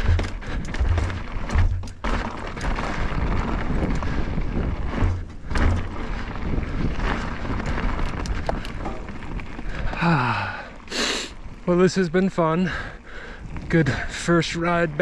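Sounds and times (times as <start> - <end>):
wind on microphone: 0.0 - 10.5
bike rattles and clicks: 0.0 - 15.0
bike tyres rolling on dirt: 0.0 - 15.0.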